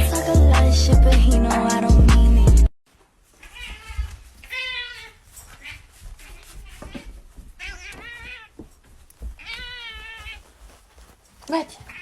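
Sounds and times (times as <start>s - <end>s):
cat meowing: 3.4s - 8.6s, 9.4s - 10.4s.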